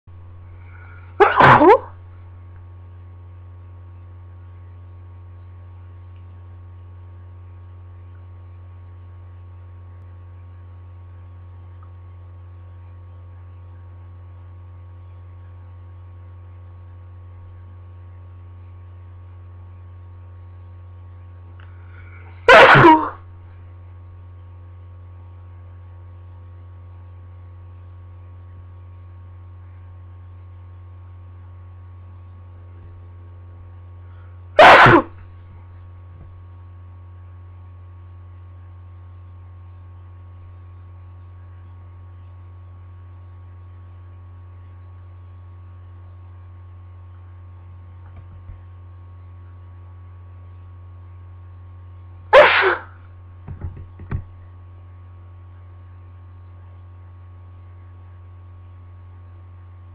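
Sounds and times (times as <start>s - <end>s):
low electrical hum: 0.1s - 59.9s
person sneezing: 0.7s - 2.0s, 21.9s - 23.2s, 34.6s - 35.2s, 52.3s - 53.0s.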